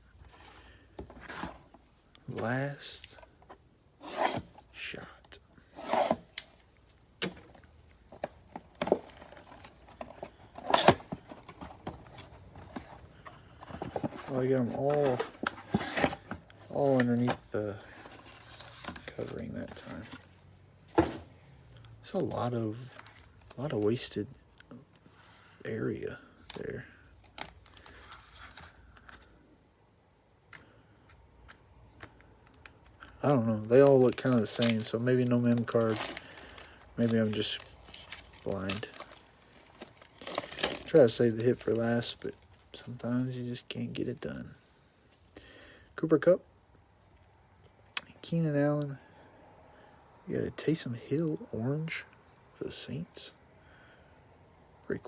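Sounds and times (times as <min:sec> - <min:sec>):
wrapper tearing and rustling: 0:33.8 - 0:41.4.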